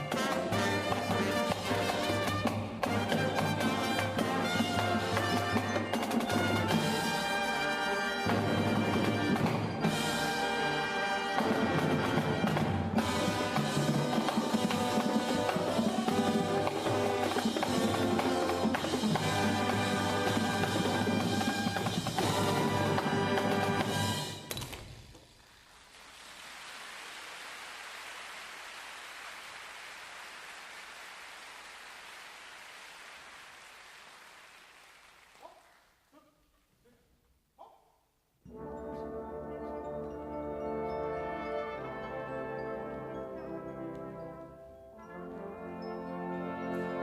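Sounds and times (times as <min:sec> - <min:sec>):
concert band playing: 0:00.0 - 0:24.6
audience applauding: 0:25.5 - 0:36.0.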